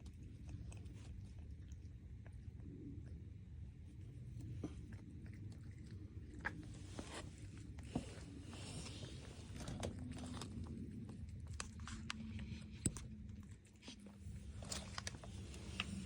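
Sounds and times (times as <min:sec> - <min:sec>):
cat chewing a treat: 0:00.0 - 0:16.0.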